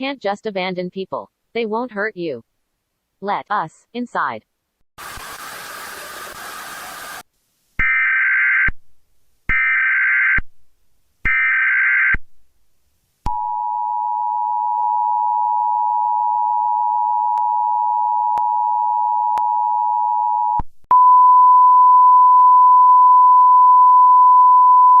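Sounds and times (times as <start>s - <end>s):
burst of static: 5.0s - 7.2s
single steady tone: 13.3s - 25.0s.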